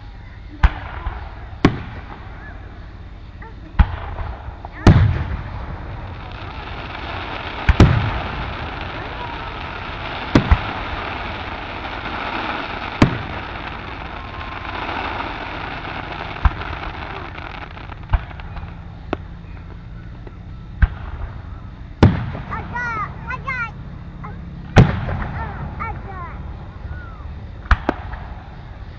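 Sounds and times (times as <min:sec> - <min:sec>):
fireworks booming: 0:00.0 - 0:28.9
murmur of crowd voices: 0:06.3 - 0:19.0.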